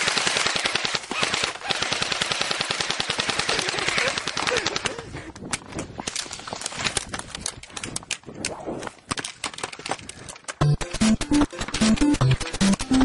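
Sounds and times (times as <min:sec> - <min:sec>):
airsoft guns firing: 0:00.0 - 0:05.0.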